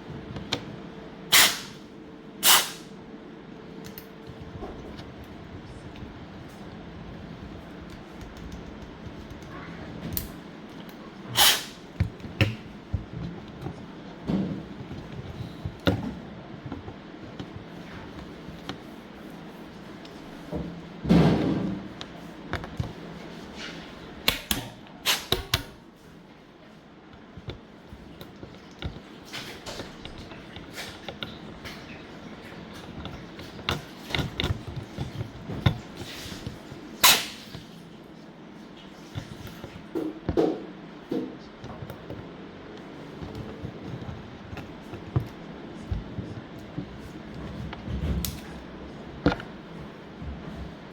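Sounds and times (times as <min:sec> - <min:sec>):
steady low hum: 0:00.0 - 0:50.9
clicks and knocks of handled objects: 0:27.1 - 0:37.7.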